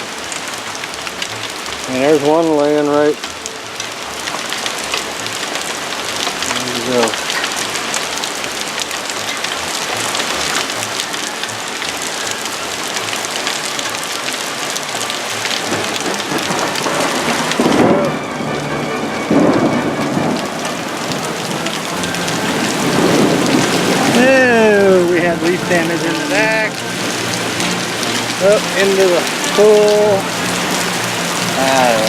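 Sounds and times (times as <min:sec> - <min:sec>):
heavy rain with hail: 0:00.0 - 0:32.0
thunder rumbles: 0:15.5 - 0:29.6.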